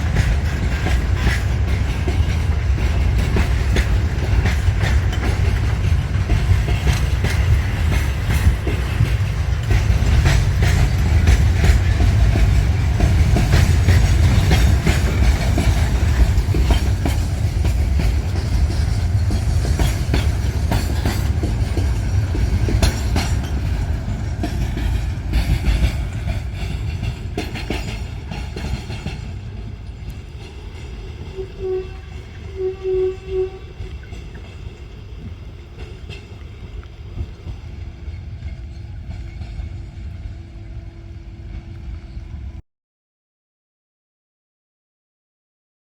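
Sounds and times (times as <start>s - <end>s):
wheels clicking over rails: 0.0s - 32.6s
locomotive engines rumbling: 0.0s - 42.6s
train horn toots: 31.1s - 34.5s.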